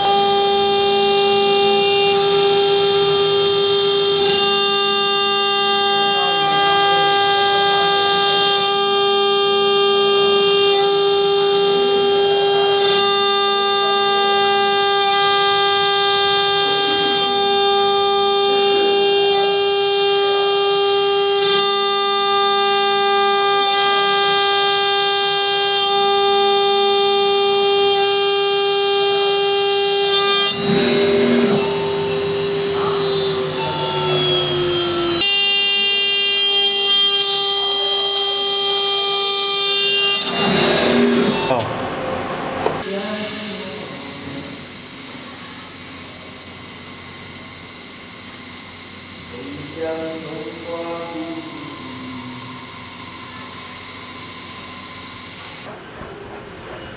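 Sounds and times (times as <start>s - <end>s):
cnc spindle motor whine: 0.0s - 55.8s
rough cutting noise: 30.0s - 35.3s, 39.8s - 41.7s.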